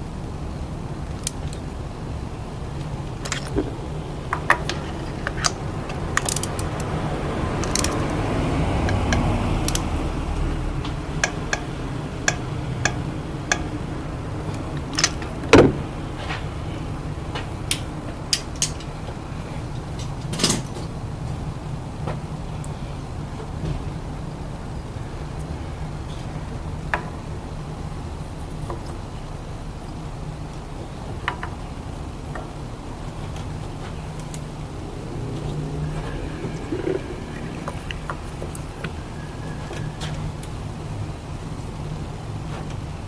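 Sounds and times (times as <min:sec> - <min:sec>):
metal clicks and clinks: 0:03.2 - 0:03.6, 0:04.3 - 0:07.0, 0:07.6 - 0:09.9, 0:14.9 - 0:15.4, 0:18.3 - 0:18.9, 0:20.0 - 0:20.8.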